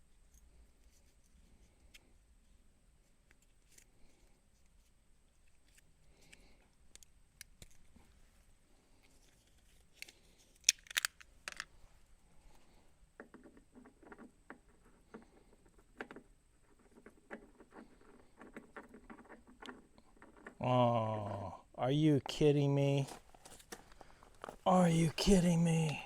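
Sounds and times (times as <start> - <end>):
fittings clicking and rattling: 10.7 - 11.7.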